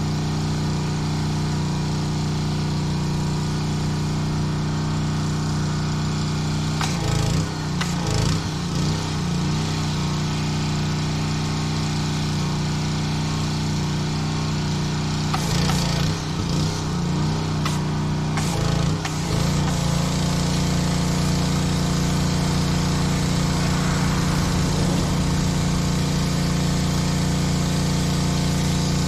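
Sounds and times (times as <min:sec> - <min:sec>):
pressure washer engine running: 0:00.0 - 0:29.0
spray jet hissing: 0:20.8 - 0:29.0.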